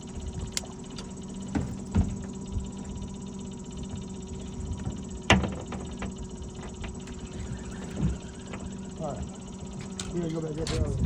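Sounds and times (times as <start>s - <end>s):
boat motor idling: 0.0s - 11.0s
sharp knocks on boat: 1.5s - 2.3s.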